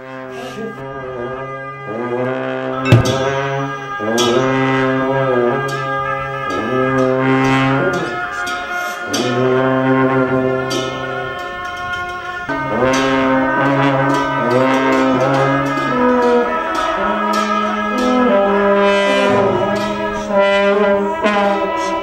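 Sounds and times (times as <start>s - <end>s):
brass instruments holding slow notes: 12.5s - 22.0s.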